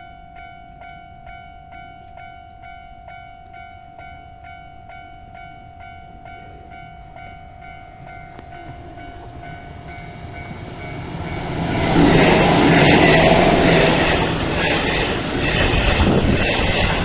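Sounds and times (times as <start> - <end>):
level-crossing bell ringing: 0.0 - 17.0
electric train passing: 6.9 - 17.0.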